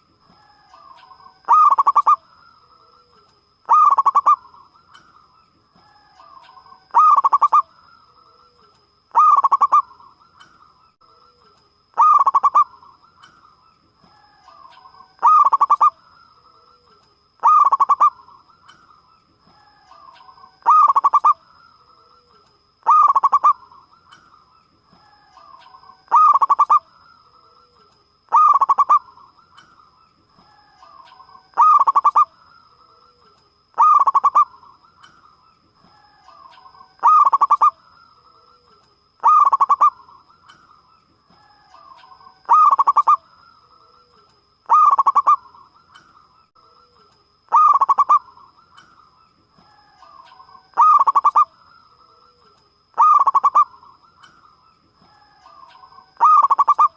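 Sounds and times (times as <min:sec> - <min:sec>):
dove cooing: 0:00.4 - 0:02.2, 0:03.1 - 0:04.6, 0:05.9 - 0:07.7, 0:08.5 - 0:10.0, 0:12.0 - 0:12.9, 0:14.3 - 0:16.0, 0:17.4 - 0:18.3, 0:19.7 - 0:21.4, 0:22.2 - 0:23.8, 0:25.0 - 0:26.9, 0:27.5 - 0:29.2, 0:30.4 - 0:32.3, 0:33.1 - 0:34.8, 0:35.9 - 0:37.8, 0:38.4 - 0:40.2, 0:41.7 - 0:45.6, 0:47.5 - 0:48.5, 0:50.0 - 0:51.5, 0:53.0 - 0:53.9, 0:55.1 - 0:56.9.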